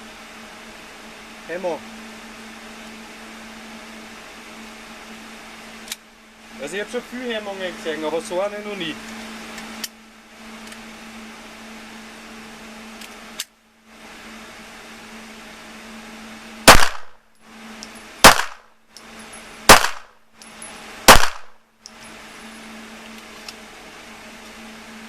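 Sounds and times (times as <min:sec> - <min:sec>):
faint steady hum: 0:00.0 - 0:25.0
pistol shots with ringing echo: 0:16.7 - 0:17.2, 0:18.2 - 0:18.7, 0:19.7 - 0:20.1, 0:21.1 - 0:21.6.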